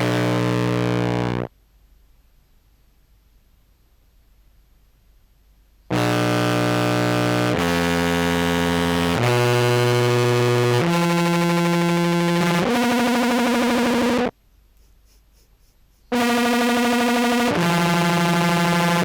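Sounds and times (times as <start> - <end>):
fuzzed contrabass clarinet notes: 0.0 - 1.5, 5.9 - 14.3, 15.1 - 19.0.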